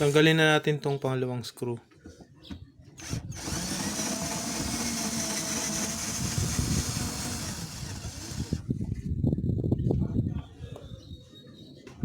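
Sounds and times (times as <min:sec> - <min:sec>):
cordless drill backing out screw: 0:03.0 - 0:08.6.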